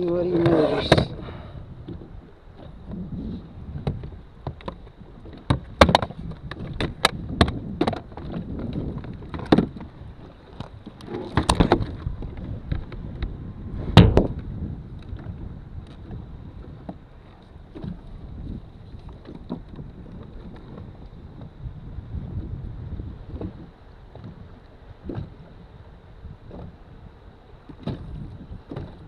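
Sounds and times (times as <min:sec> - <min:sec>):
wind on microphone: 0:00.0 - 0:29.0
knocks against plastic kayak: 0:05.4 - 0:08.0, 0:13.9 - 0:14.4.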